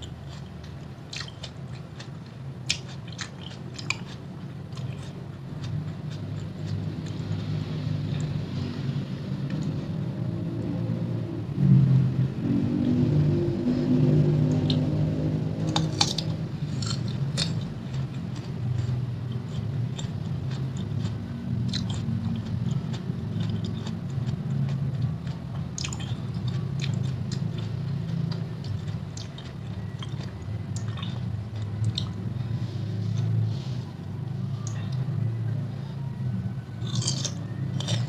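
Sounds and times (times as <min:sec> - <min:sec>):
chewing crunchy raw fruit: 0:00.0 - 0:08.4, 0:13.9 - 0:33.4, 0:36.7 - 0:38.0
low steady hum: 0:00.0 - 0:38.0.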